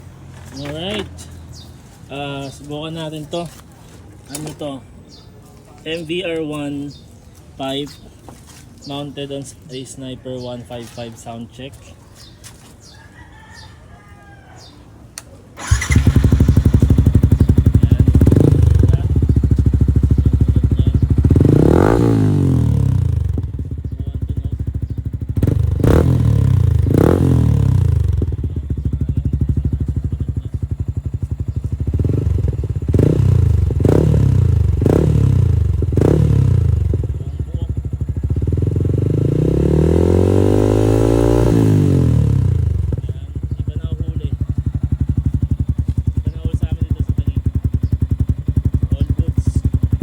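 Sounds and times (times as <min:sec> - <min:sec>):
motorcycle engine idling and revving: 0:00.0 - 0:04.9, 0:15.5 - 0:50.0.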